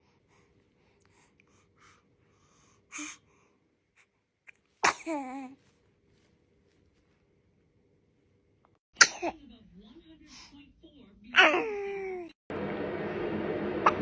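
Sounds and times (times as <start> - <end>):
baby sneezing: 4.8 - 5.5, 9.0 - 9.4.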